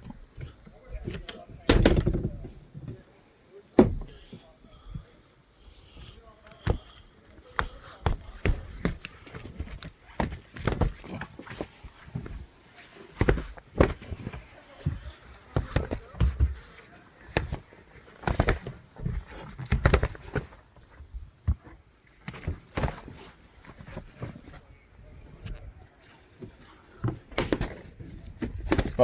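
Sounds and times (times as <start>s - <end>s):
knocks and thumps: 0.0s - 3.0s, 3.8s - 5.1s, 5.8s - 12.5s, 13.1s - 23.2s
footsteps: 3.8s - 24.7s.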